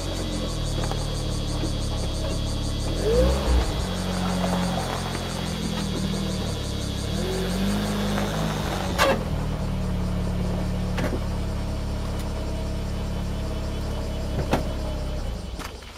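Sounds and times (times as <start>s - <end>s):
car engine low drone: 0.0s - 15.9s.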